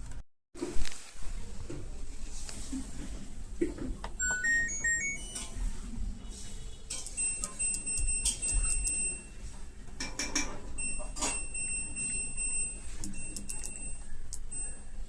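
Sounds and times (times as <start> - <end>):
high-pitched electronic beeps: 4.2 - 5.6.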